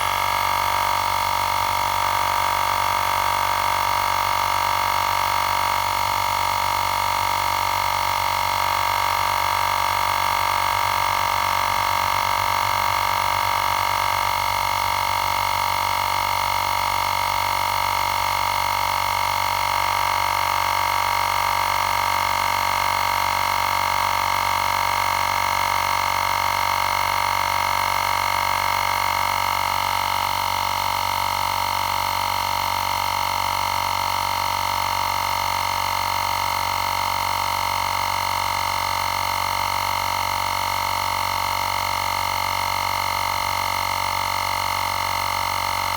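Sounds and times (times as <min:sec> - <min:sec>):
air compressor humming: 0:00.0 - 0:05.2, 0:09.1 - 0:16.0.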